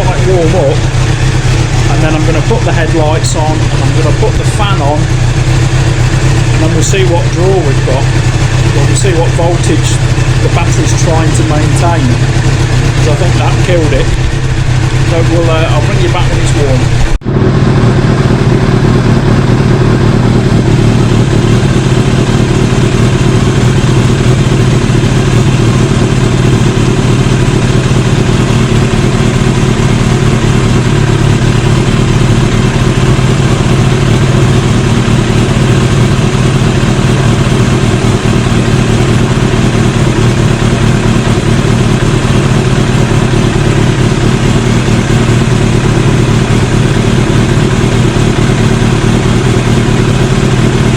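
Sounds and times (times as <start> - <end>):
motorcycle engine idling: 0.0 - 50.9.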